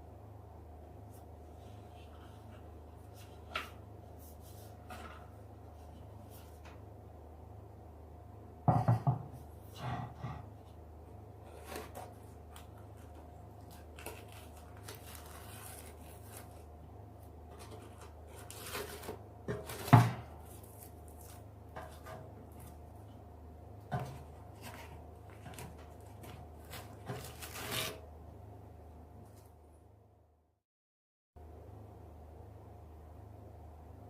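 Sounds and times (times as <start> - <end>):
faint steady hum: 0.0 - 30.5, 31.4 - 34.0
handling knocks and scrapes: 17.5 - 23.0, 23.8 - 28.0.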